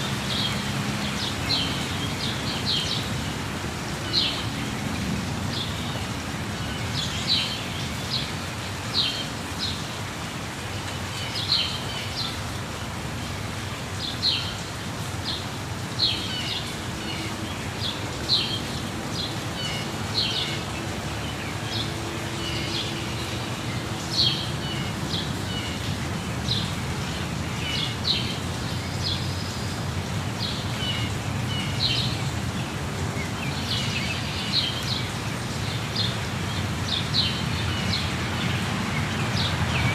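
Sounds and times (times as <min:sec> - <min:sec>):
waterfall rushing: 0:00.0 - 0:39.9
birds chirping: 0:15.3 - 0:39.9.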